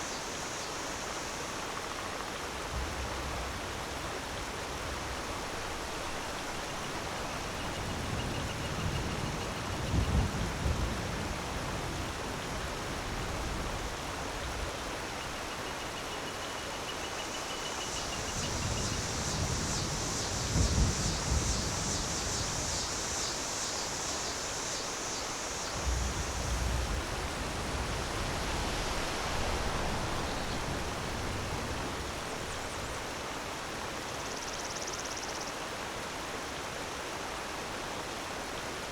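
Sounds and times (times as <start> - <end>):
waterfall rushing: 22.9 - 34.2.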